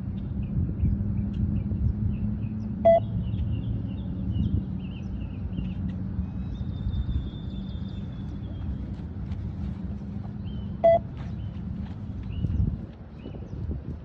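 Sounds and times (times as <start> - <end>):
steady low rumble: 0.0 - 14.0
birds chirping: 1.6 - 13.7
short electronic beep: 2.8 - 3.1, 10.8 - 11.0.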